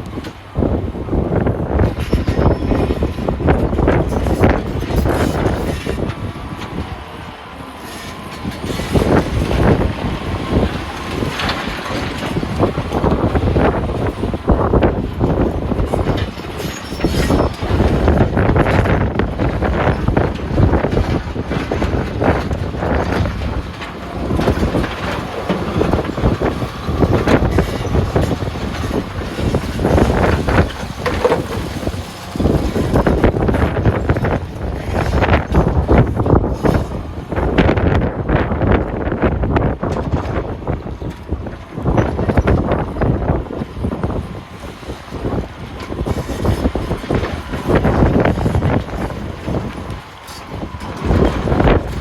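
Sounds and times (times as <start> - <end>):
diesel engine rumbling: 0.0 - 52.0
rocks crunching and clattering: 15.1 - 36.9.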